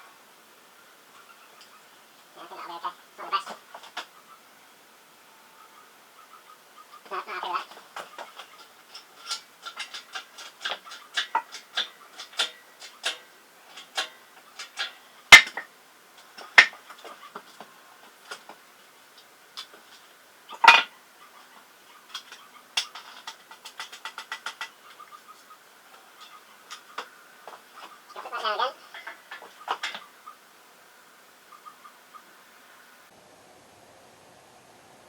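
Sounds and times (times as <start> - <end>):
metal tools clinking: 7.7 - 15.6, 19.6 - 20.9, 22.1 - 25.1, 28.8 - 30.0.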